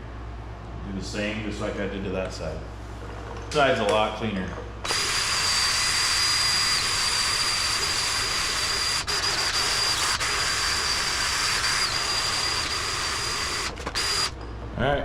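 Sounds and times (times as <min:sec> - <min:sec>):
wire wheel scrubbing metal: 0:04.8 - 0:14.4.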